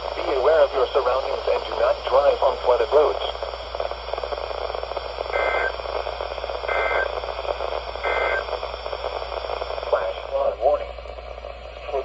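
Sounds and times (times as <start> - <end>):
radio static: 0.0 - 12.0
warbling digital data tones: 5.3 - 5.8, 6.6 - 7.4, 8.0 - 8.5.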